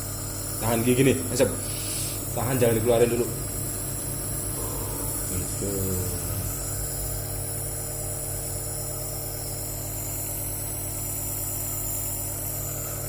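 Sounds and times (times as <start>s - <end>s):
nebulizer compressor humming: 0.0s - 13.0s
high hiss of air: 1.5s - 2.4s.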